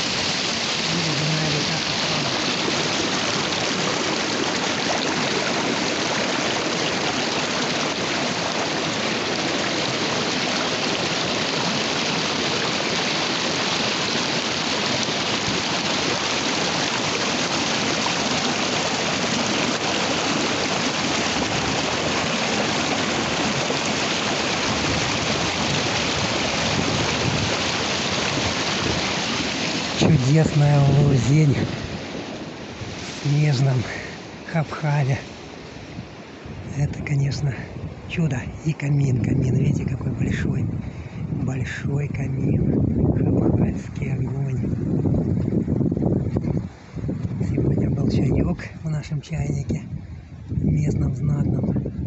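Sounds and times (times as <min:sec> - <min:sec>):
river water rushing: 0:00.0 - 0:38.2.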